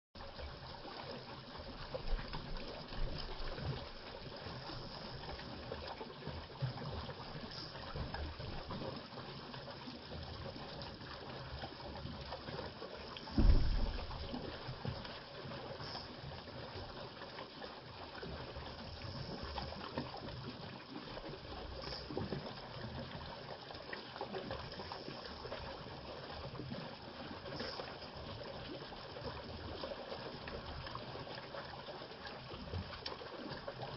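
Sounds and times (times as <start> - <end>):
water trickling: 0.2 - 33.9
low thump: 13.2 - 14.6.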